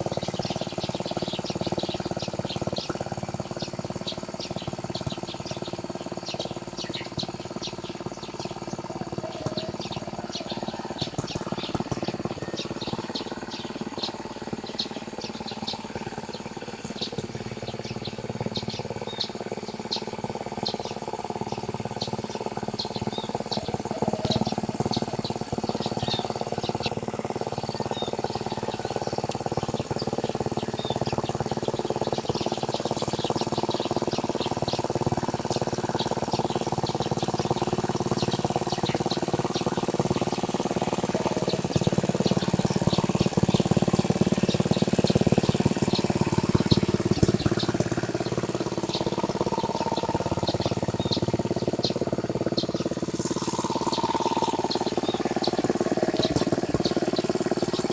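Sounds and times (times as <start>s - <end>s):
small birds chirping: 0.0s - 57.9s
tractor engine running: 0.0s - 57.9s.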